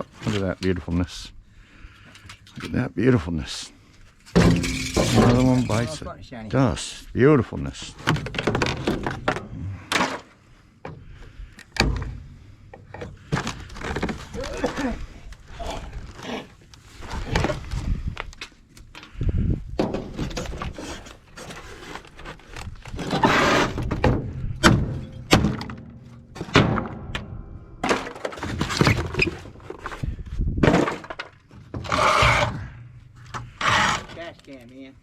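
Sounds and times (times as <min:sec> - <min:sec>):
metal crashes: 0:04.3 - 0:06.0
scrap metal clattering: 0:04.3 - 0:06.0.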